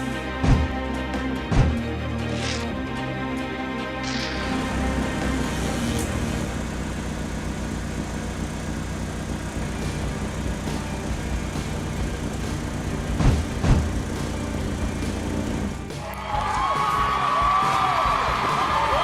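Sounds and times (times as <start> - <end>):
vehicle engine rumbling: 0.0 - 16.0
knocks: 0.4 - 0.7, 1.5 - 1.8, 13.2 - 14.0.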